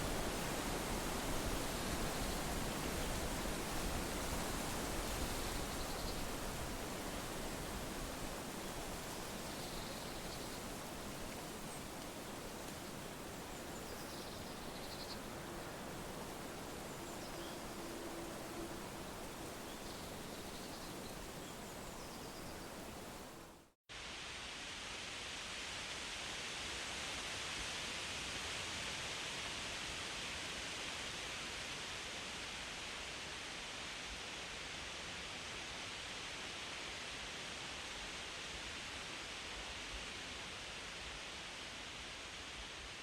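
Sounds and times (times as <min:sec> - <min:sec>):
wind rustling through leaves: 0:00.0 - 0:43.0.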